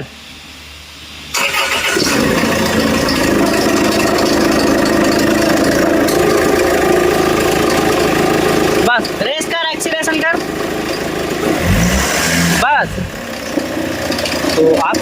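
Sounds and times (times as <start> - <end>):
starter motor cranking: 1.3 - 9.2
engine running loudly: 2.0 - 9.2, 9.8 - 15.0.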